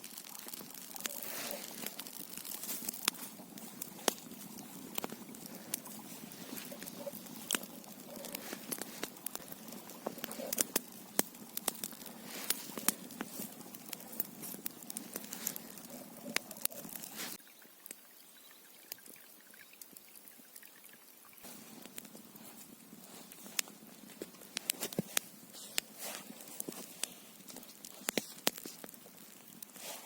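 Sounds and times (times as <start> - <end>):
crackling clicks and pops: 0.0 - 18.0, 18.9 - 30.0.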